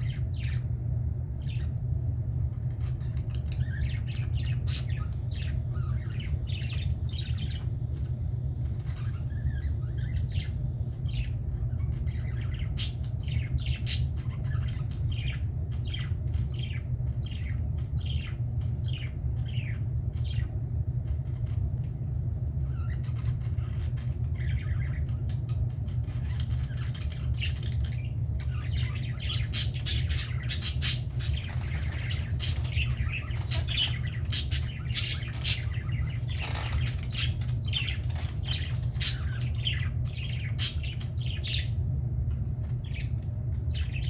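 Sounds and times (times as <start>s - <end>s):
steady low hum: 0.0s - 44.0s
budgerigars chattering: 8.7s - 20.5s, 22.7s - 41.8s.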